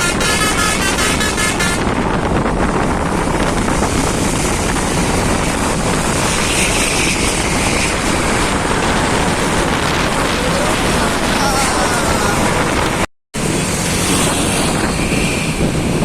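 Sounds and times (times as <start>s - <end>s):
bus air horn melody: 0.0s - 2.0s
wind and road noise: 0.0s - 16.0s.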